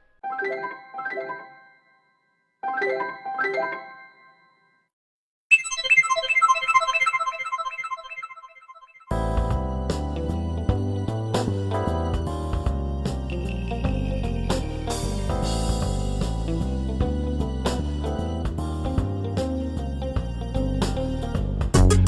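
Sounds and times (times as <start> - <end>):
phone tune with bass line: 21.7 - 22.0.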